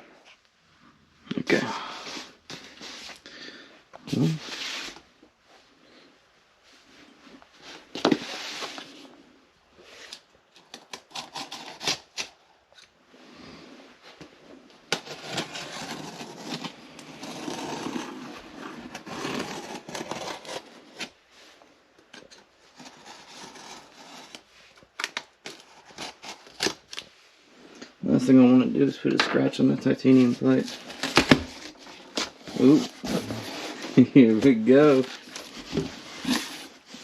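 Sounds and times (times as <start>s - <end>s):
cardboard scraping and rustling: 14.9s - 21.2s, 30.1s - 37.0s.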